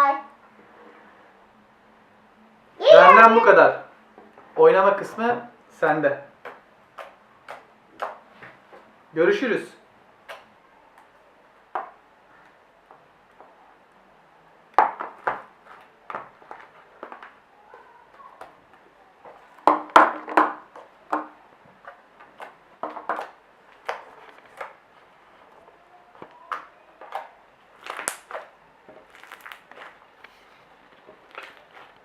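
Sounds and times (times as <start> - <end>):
slime sticky clicks and pops: 27.9 - 28.5.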